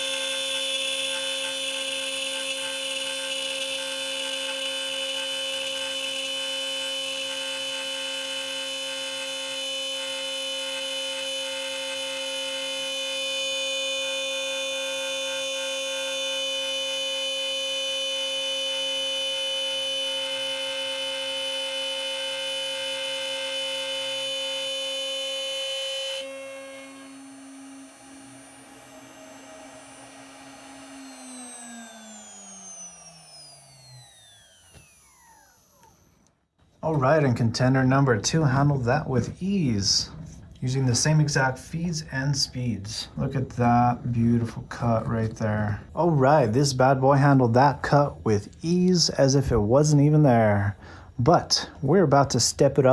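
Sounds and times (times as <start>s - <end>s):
router spindle whining cutting wood: 0.0s - 36.3s.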